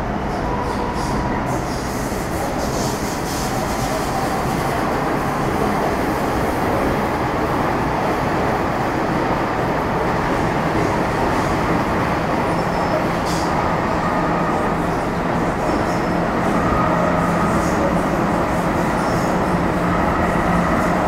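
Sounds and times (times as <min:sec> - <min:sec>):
train wheels rumbling on rails: 0:00.0 - 0:21.0.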